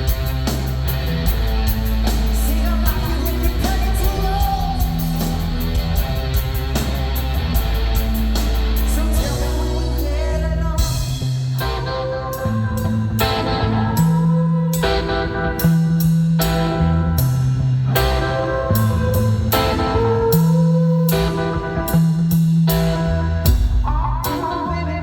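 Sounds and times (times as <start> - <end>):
drums: 0.0 - 25.0
electric guitar: 0.0 - 25.0
person singing: 2.2 - 6.2, 8.8 - 16.0, 18.0 - 25.0.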